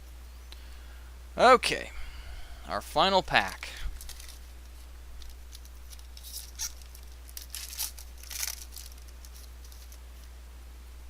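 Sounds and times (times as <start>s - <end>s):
steady low hum: 0.0s - 11.0s
foil wrapper tearing and crinkling: 4.0s - 4.5s, 5.2s - 10.0s.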